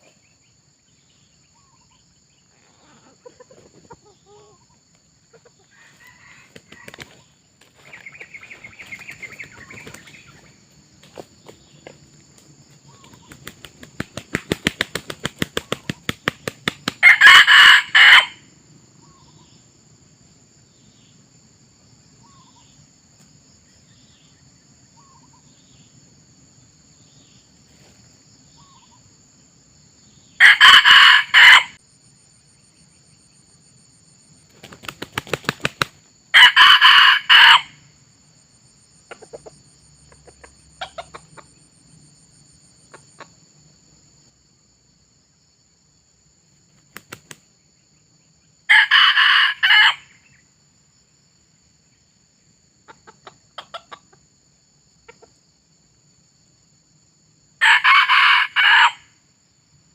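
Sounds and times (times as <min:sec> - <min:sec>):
high insect drone: 0:00.0 - 0:59.9
rooster crowing: 0:05.7 - 0:07.1, 0:17.0 - 0:18.5, 0:30.4 - 0:31.8, 0:36.3 - 0:37.9, 0:48.7 - 0:50.2, 0:57.6 - 0:59.2
rooster flapping wings: 0:06.4 - 0:11.7, 0:13.0 - 0:17.4, 0:34.5 - 0:36.1, 0:46.7 - 0:47.5.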